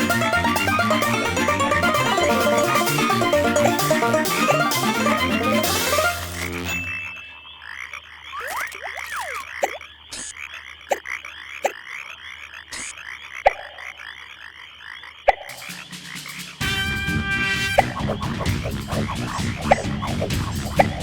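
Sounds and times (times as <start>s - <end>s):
frogs croaking: 6.8s - 16.6s
gliding frog calls: 7.2s - 16.2s.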